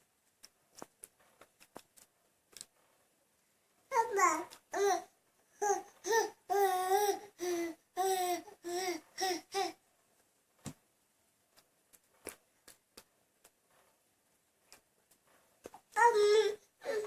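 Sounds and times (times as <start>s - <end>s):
baby babbling: 3.9s - 9.8s, 16.0s - 17.0s.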